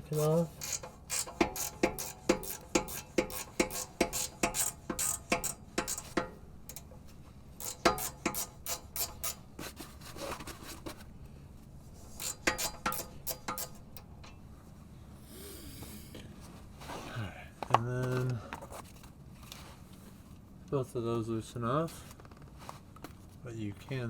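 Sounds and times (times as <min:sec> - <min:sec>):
ratcheting wrench clicking: 0:00.6 - 0:06.9, 0:07.6 - 0:09.4, 0:12.2 - 0:14.1.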